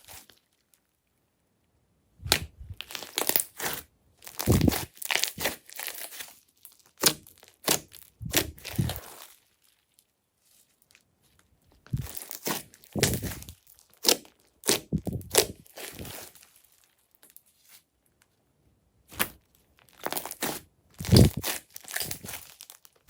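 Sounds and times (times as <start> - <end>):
slime crackling and popping: 2.2 - 9.6, 11.9 - 16.3, 19.2 - 23.0.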